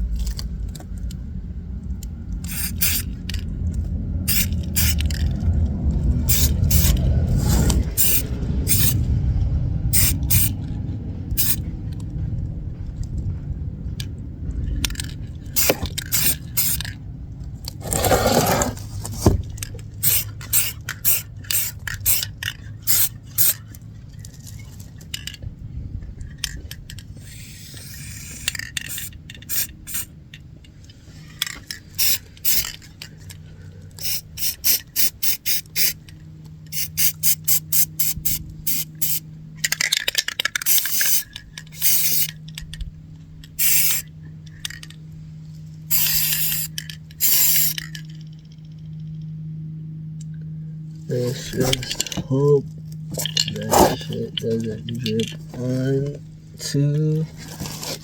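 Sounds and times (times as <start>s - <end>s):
low rumble: 0.0s - 34.4s
spray paint can hissing: 2.4s - 3.4s, 4.3s - 5.2s, 6.3s - 9.0s, 9.9s - 10.6s, 11.4s - 11.6s, 15.6s - 16.9s, 20.0s - 23.6s, 27.2s - 30.1s, 32.0s - 32.7s, 34.0s - 36.0s, 36.7s - 39.2s, 40.6s - 42.4s, 43.6s - 44.1s, 45.9s - 47.9s, 53.1s - 54.2s.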